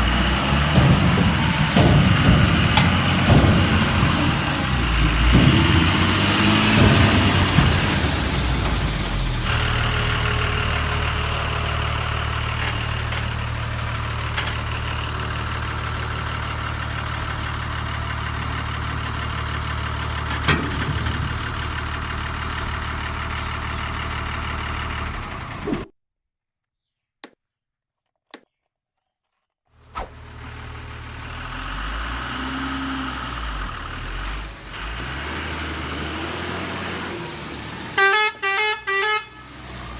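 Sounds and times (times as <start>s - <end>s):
engine-like idling hum: 0.0s - 25.9s.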